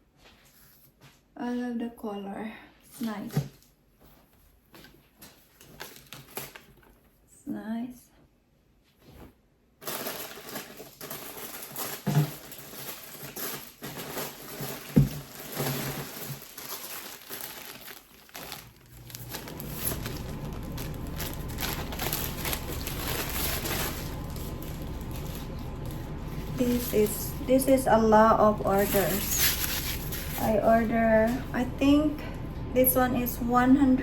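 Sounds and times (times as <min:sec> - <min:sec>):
plastic packaging crinkling: 0:05.3 - 0:07.0, 0:09.8 - 0:31.5.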